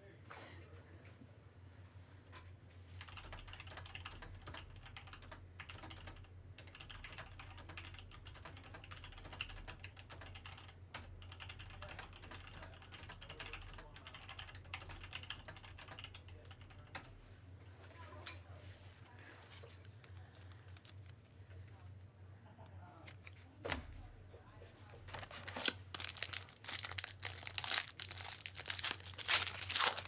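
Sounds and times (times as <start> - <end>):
trading cards flipping: 25.0 - 30.0.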